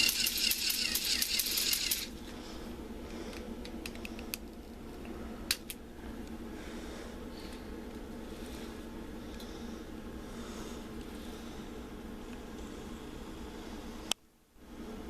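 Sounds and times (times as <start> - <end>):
rattle of plastic clicks: 0.0 - 2.1
sharp clicks: 0.0 - 2.1.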